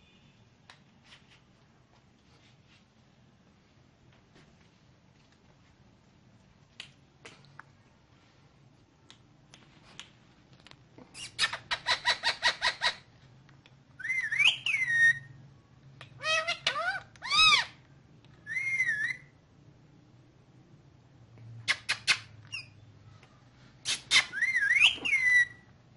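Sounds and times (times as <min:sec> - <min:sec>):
parakeet shrill chirps: 0:14.0 - 0:15.3, 0:16.2 - 0:17.8, 0:18.4 - 0:19.3, 0:23.9 - 0:25.6
parakeet whistled phrases: 0:14.0 - 0:15.3, 0:18.4 - 0:19.3, 0:24.1 - 0:25.6.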